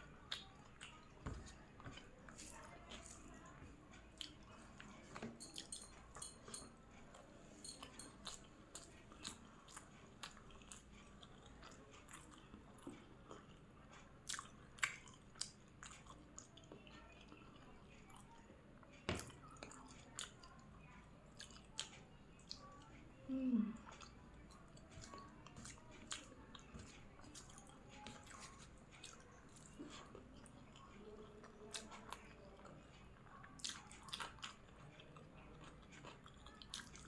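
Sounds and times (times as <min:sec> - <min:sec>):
person chewing food: 0:00.0 - 0:20.6, 0:21.3 - 0:23.0, 0:23.8 - 0:37.0.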